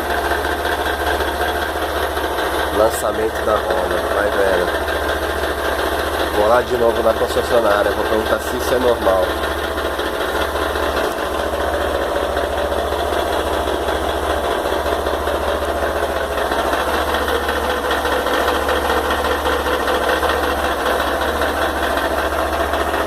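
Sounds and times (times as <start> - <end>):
motorcycle engine running: 0.0 - 23.0.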